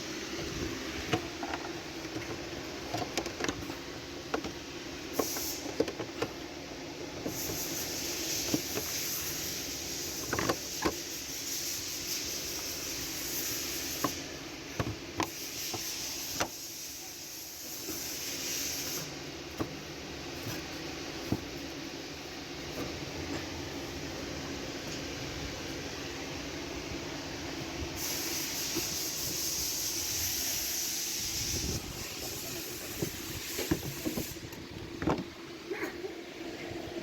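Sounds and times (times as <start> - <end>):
background hum and hiss: 0.0 - 37.0
high hiss: 5.1 - 5.8, 7.3 - 14.4, 27.9 - 34.6.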